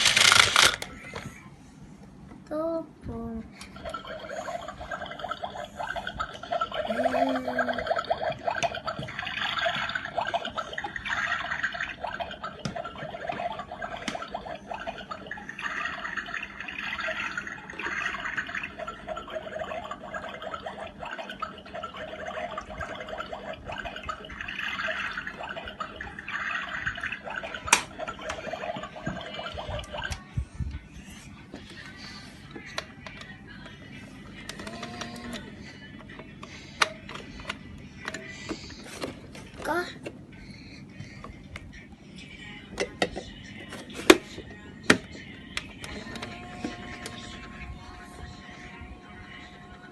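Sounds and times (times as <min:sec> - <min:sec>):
toy water pump humming: 0:00.0 - 0:01.3, 0:03.6 - 0:30.4, 0:31.6 - 0:39.9, 0:44.1 - 0:49.9
water flowing and splashing: 0:03.9 - 0:30.2.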